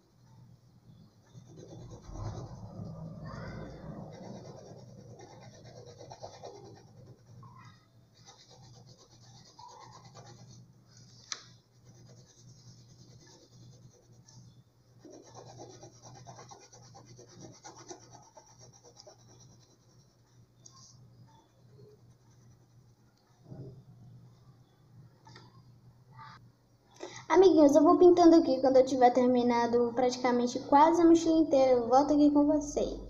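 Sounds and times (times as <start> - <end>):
colouring strokes scratching on paper: 1.2 - 22.9.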